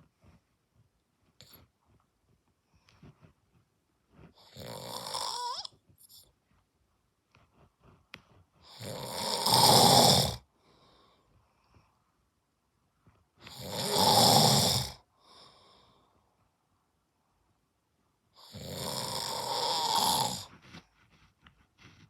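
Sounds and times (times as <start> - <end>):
man snoring: 4.4 - 5.7, 8.7 - 10.4, 13.5 - 15.0, 18.4 - 20.5
faint breath out: 10.5 - 12.0.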